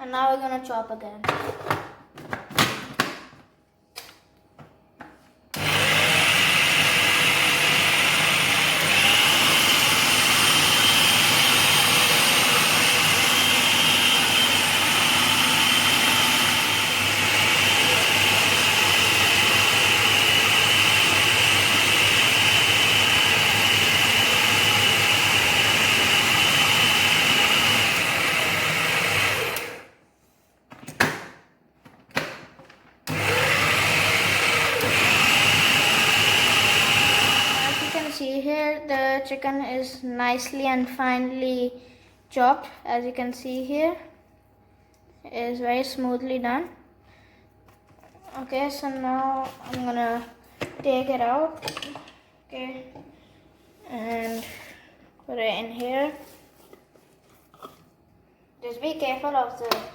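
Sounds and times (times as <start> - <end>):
food chopper motor whining: 5.5 - 30.0, 33.1 - 38.2.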